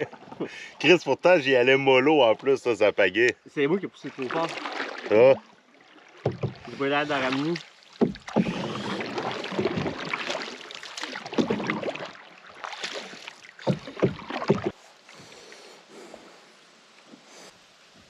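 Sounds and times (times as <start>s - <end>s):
paddles splashing through water: 0.0s - 17.5s
paddle knocking on hull: 6.0s - 12.2s, 12.8s - 14.7s.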